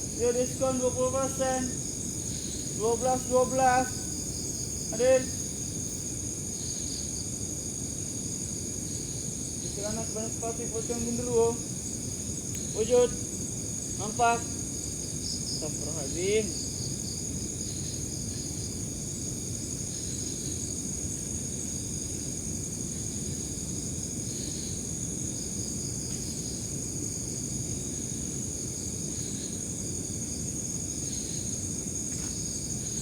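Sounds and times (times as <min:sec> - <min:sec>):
low background rumble: 0:00.0 - 0:06.2
crickets chirping: 0:00.0 - 0:33.0.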